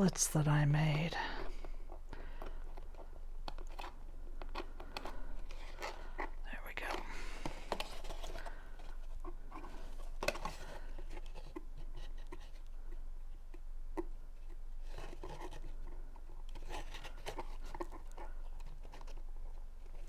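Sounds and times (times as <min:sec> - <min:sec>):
small paper ticks: 0:02.1 - 0:20.0
cardstock rustling and scraping: 0:02.3 - 0:12.6, 0:14.8 - 0:20.0.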